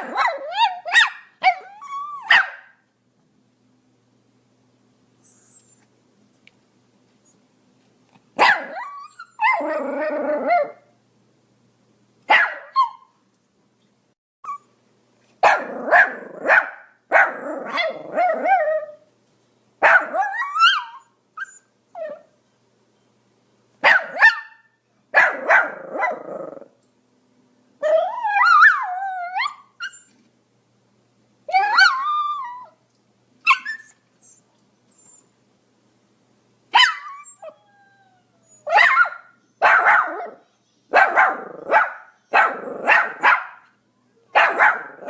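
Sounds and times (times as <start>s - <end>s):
dog whining: 0.0s - 2.4s, 5.2s - 5.9s, 8.5s - 10.8s, 14.4s - 14.7s, 17.4s - 19.0s, 20.0s - 22.3s, 27.8s - 30.2s, 31.5s - 32.8s, 33.5s - 35.3s, 36.8s - 40.4s
small dog yapping: 0.0s - 2.8s, 8.4s - 10.8s, 12.3s - 13.1s, 15.4s - 19.0s, 19.8s - 21.5s, 23.8s - 26.6s, 31.5s - 32.7s, 33.5s - 34.0s, 36.8s - 37.6s, 38.6s - 43.6s, 44.4s - 45.0s.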